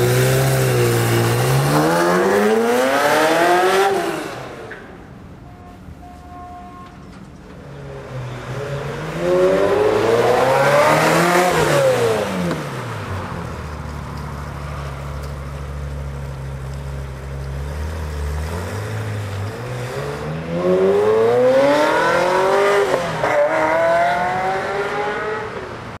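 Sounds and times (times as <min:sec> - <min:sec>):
car engine revving: 0:00.0 - 0:04.6, 0:08.1 - 0:13.3, 0:16.9 - 0:25.6.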